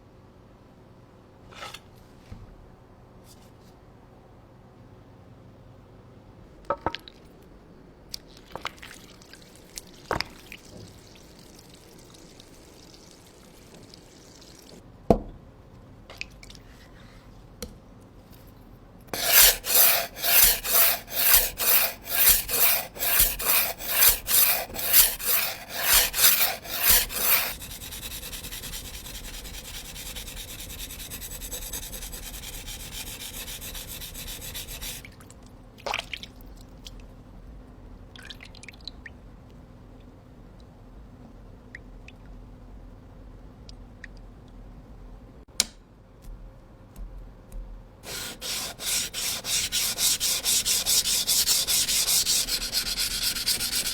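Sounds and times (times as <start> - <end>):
knife on sharpening stone: 19.2 - 30.5, 48.1 - 53.9
clicks and taps: 45.5 - 47.8.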